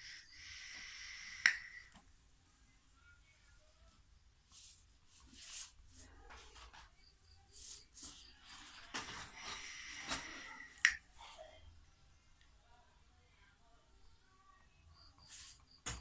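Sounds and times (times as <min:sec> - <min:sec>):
airy hiss of drawn breath: 0:00.0 - 0:01.9, 0:09.3 - 0:11.0
breathy puffs of air: 0:00.0 - 0:01.9, 0:09.2 - 0:11.0.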